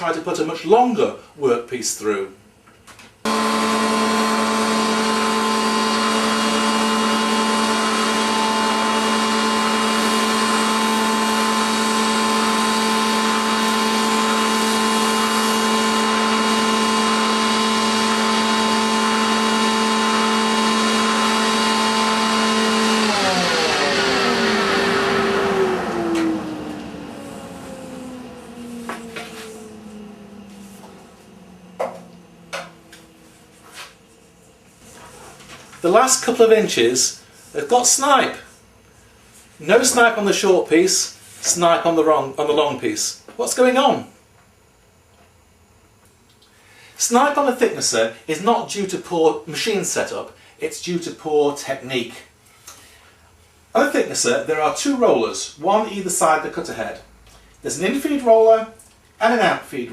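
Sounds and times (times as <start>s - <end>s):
machine winding down: 3.2s - 38.4s
thicknesser whining: 3.2s - 40.1s.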